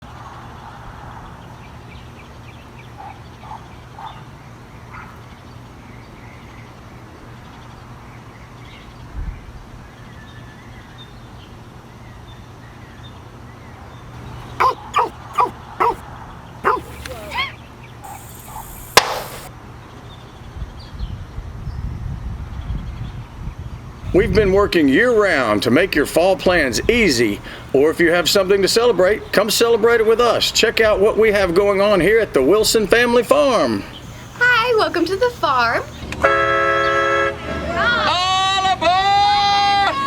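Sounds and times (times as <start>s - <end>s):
dog barking: 4.9s - 5.2s, 14.6s - 16.0s, 16.6s - 19.5s
sharp click: 18.9s - 19.5s.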